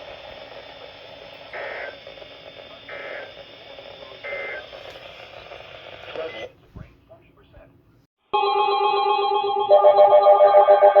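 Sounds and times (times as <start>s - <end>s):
radio hiss: 0.0s - 7.7s.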